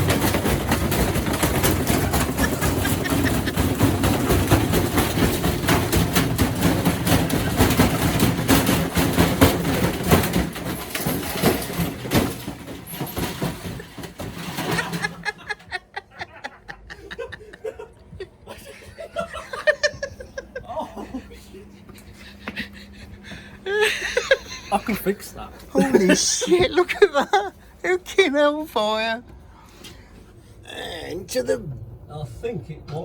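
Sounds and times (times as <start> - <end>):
bricks rattling in washing machine drum: 0.0 - 17.6, 18.9 - 20.2, 23.9 - 27.5.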